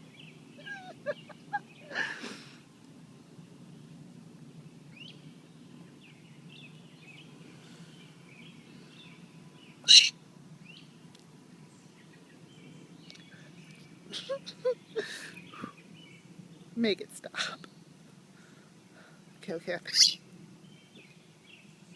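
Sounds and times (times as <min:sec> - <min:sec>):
low outdoor background: 0:00.0 - 0:21.9
bird chirps: 0:00.1 - 0:02.0, 0:04.9 - 0:10.9.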